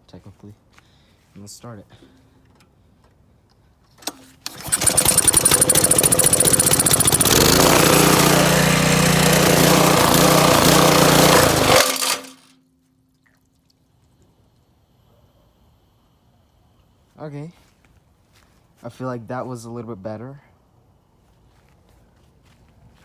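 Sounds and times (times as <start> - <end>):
small engine running: 4.4 - 12.5.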